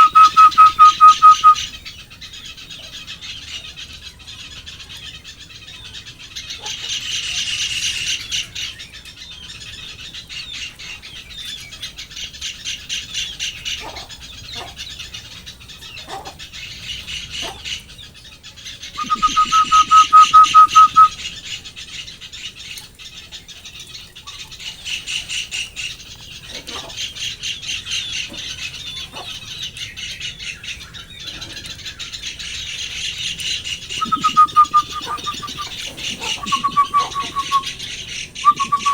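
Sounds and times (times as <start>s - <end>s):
bird chattering: 0.0s - 1.8s, 18.9s - 21.4s, 30.3s - 38.9s
bird trill: 0.0s - 1.8s, 18.8s - 21.5s, 27.6s - 38.9s.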